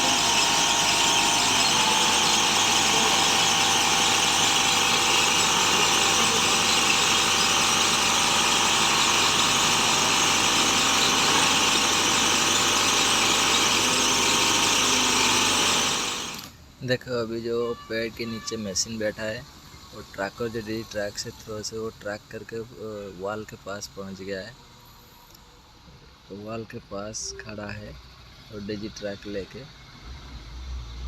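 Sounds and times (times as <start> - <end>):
drilling rig squealing whine: 0.0 - 16.5.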